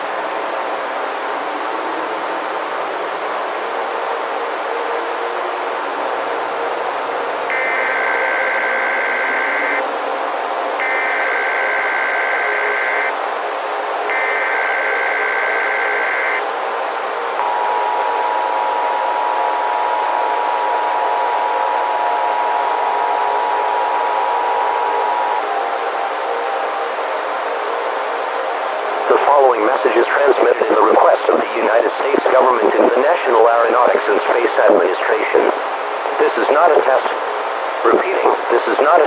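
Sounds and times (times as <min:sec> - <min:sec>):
static hiss: 0:00.0 - 0:39.0
digital data tone bursts: 0:07.5 - 0:09.8, 0:10.8 - 0:13.2, 0:14.1 - 0:16.4
two-tone attention signal: 0:07.5 - 0:09.8, 0:10.8 - 0:13.1, 0:14.1 - 0:16.4.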